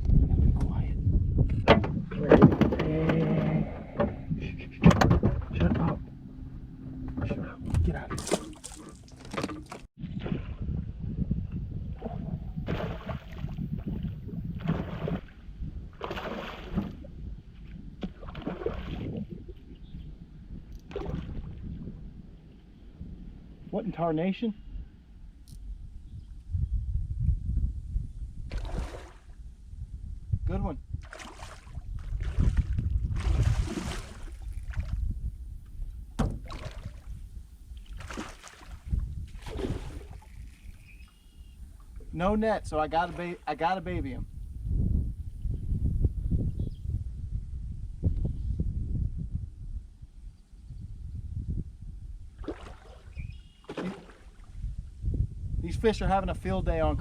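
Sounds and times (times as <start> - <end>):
wind buffeting microphone: 0.0 - 8.3, 9.9 - 23.8, 24.6 - 53.4, 54.2 - 57.0
boat rumble: 0.0 - 23.8, 28.4 - 45.1
water noise: 1.4 - 22.6, 28.4 - 29.5, 31.0 - 44.7, 52.3 - 54.9
knocks on boat: 36.2 - 36.7.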